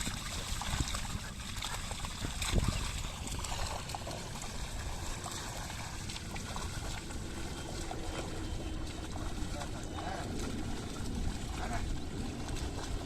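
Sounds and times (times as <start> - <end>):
hooves in mud: 0.0 - 13.0
plough working through mud: 0.0 - 13.0
water and mud sloshing: 0.0 - 13.0.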